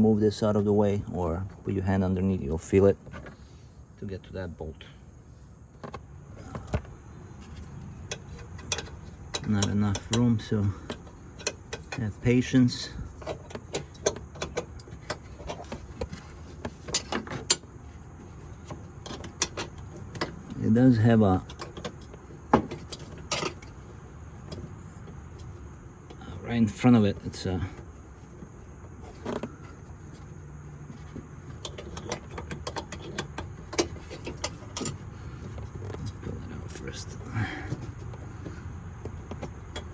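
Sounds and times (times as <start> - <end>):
clicks and knocks of hand tools: 5.8 - 12.6, 13.2 - 17.6, 18.6 - 20.6, 21.4 - 23.8, 30.9 - 36.3.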